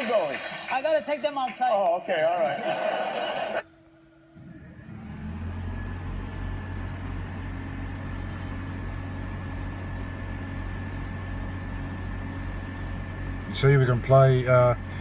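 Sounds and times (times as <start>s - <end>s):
vehicle engine idling: 4.4s - 15.0s.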